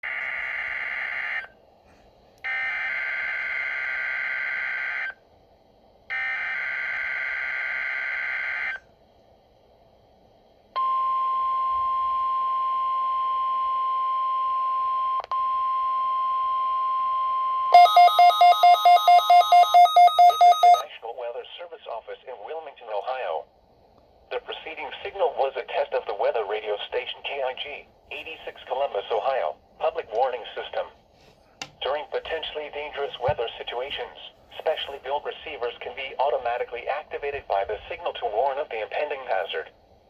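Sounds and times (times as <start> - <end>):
steady warning alarm tone: 10.8 - 20.9
rapid pulsing beeps: 17.8 - 20.8
radio hiss: 24.2 - 31.0, 31.8 - 39.8.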